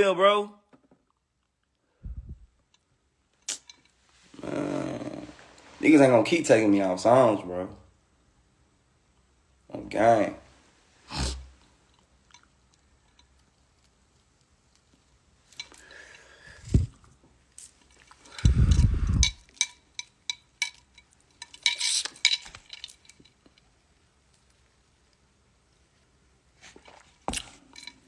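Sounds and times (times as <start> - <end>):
light clicks and clinks: 14.7 - 16.2, 17.6 - 23.7, 26.7 - 28.0
low rumbling handling noise: 18.4 - 19.4.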